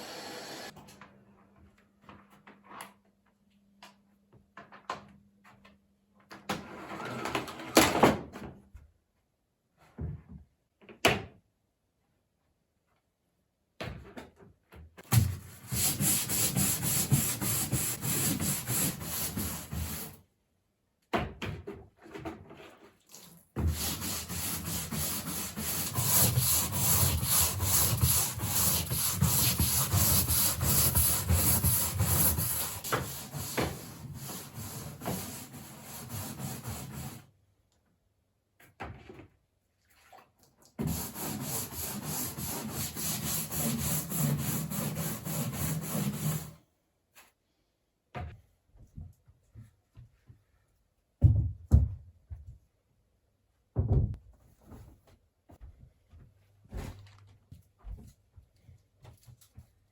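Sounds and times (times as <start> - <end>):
brush scrubbing a surface: 15.5 - 20.2, 23.6 - 37.3, 40.8 - 46.5.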